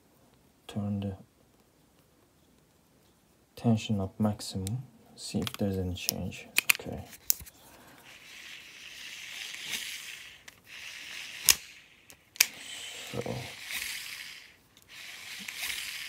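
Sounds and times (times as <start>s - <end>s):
sharp reel clicks: 8.0s - 16.0s
fishing reel spool whirring: 8.1s - 16.0s.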